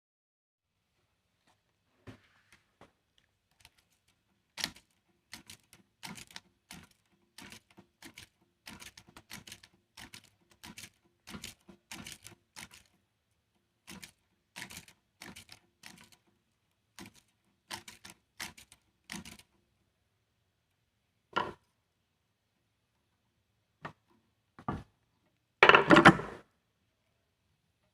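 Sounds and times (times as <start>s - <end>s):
sharp clicks and knocks: 3.6s - 13.0s.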